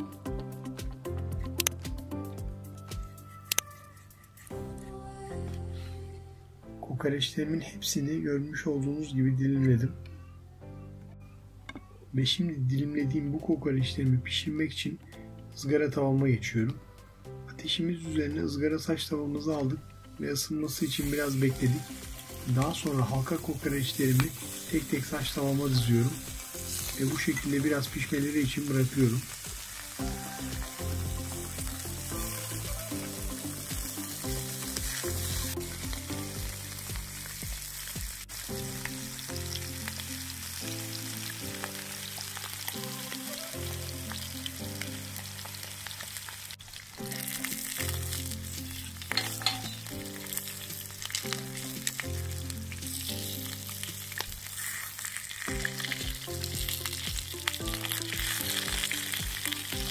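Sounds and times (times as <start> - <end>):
slow low-note background music: 0.0 - 59.9
meat sizzling on a griddle: 20.7 - 59.9.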